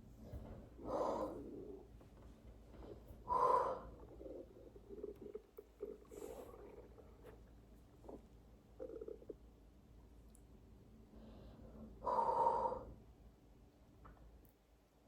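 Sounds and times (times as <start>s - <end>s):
stomach gurgling: 3.9s - 9.5s.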